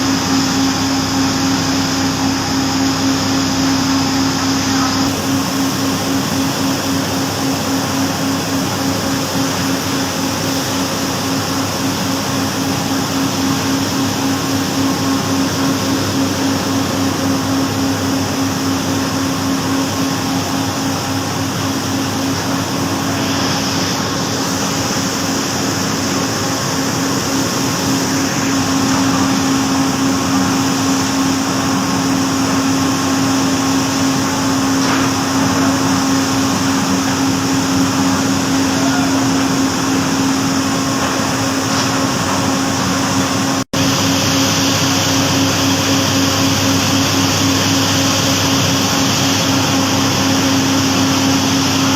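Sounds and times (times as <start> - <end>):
mill machinery droning: 0.0 - 51.9.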